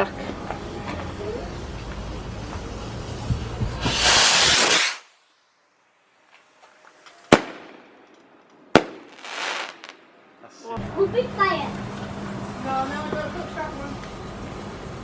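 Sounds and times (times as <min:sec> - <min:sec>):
firework bangs: 0:00.6 - 0:06.4, 0:07.2 - 0:10.2
firework hissing whoosh: 0:01.2 - 0:07.8, 0:08.7 - 0:10.0.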